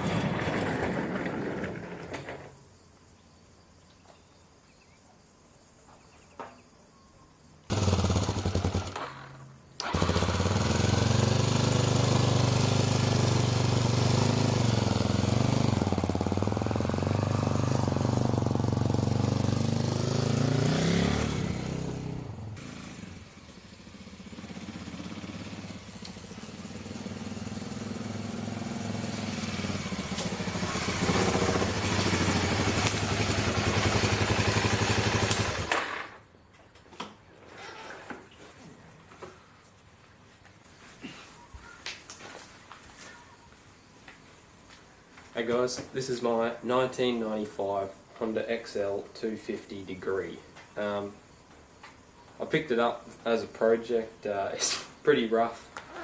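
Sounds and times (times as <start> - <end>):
motorcycle engine starting: 7.7 - 36.3.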